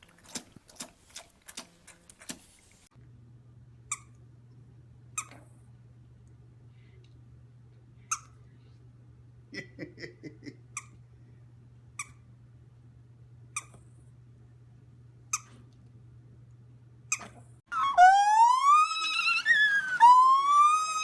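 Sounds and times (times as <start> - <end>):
pet animal squeaking: 8.1 - 8.4.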